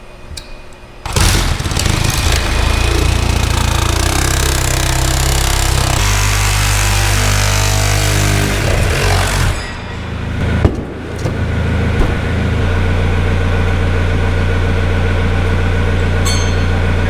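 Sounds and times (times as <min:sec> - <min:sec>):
engine humming: 0:01.1 - 0:17.0
sharp knocks: 0:10.4 - 0:14.0.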